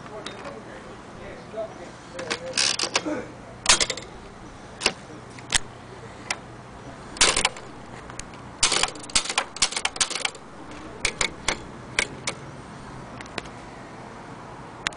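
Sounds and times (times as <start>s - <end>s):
manual typewriter key strikes: 3.7s - 4.1s, 7.2s - 7.7s, 8.6s - 12.4s.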